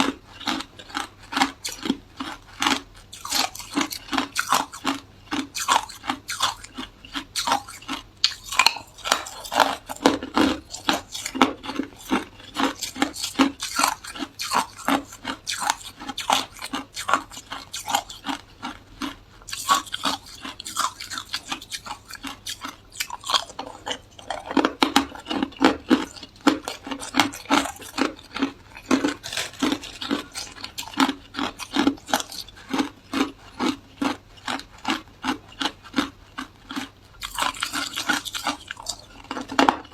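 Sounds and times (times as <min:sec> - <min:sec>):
ice being chewed: 0:00.0 - 0:39.9.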